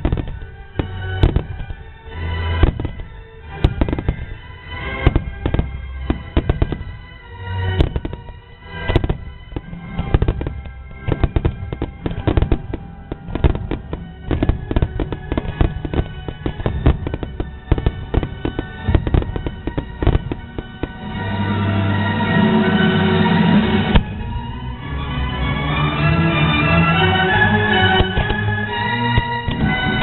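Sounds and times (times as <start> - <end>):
fireworks bangs and crackles: 0.0 - 30.0
music playing: 0.0 - 30.0.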